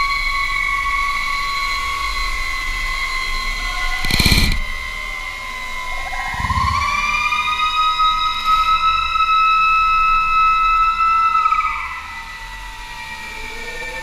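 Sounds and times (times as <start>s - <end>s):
high mechanical whine: 3.7s - 5.0s, 5.9s - 7.8s.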